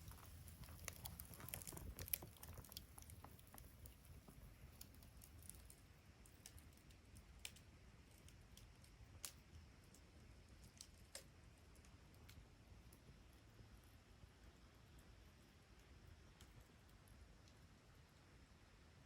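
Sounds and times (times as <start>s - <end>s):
sharp pops from fire: 0.0s - 10.0s
wood fire crackling: 0.0s - 19.0s.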